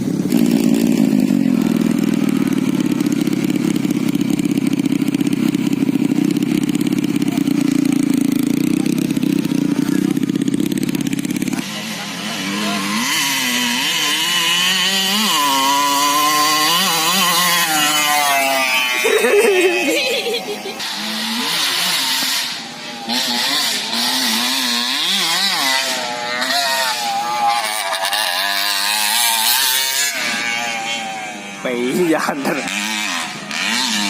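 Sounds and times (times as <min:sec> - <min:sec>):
motorcycle engine running: 0:00.0 - 0:34.0.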